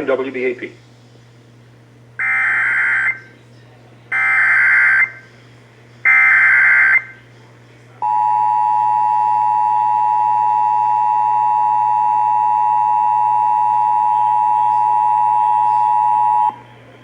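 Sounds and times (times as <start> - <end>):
two-tone attention signal: 8.0 - 16.6.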